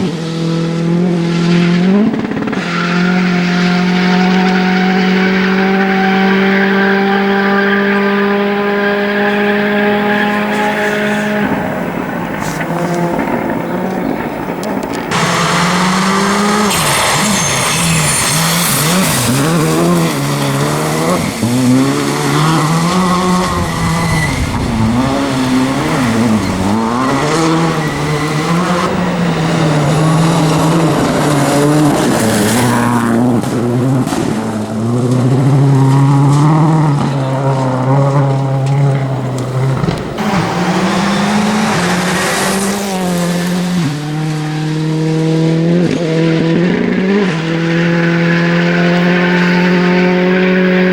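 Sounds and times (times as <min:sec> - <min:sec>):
rally car engines revving: 0:00.0 - 0:50.9.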